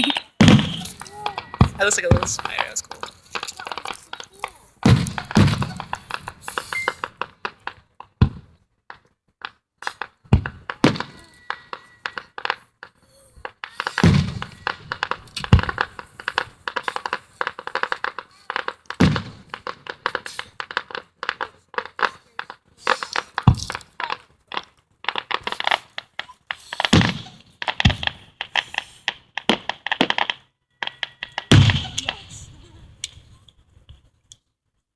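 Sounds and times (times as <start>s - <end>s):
firework crackling: 0.0s - 7.8s, 13.5s - 32.6s
firework booms: 0.4s - 2.8s, 4.9s - 6.3s, 31.5s - 32.4s.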